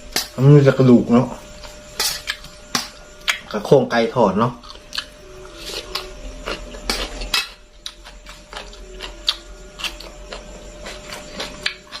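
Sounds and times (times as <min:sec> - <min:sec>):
chewing crunchy fried chicken: 0:04.5 - 0:12.0.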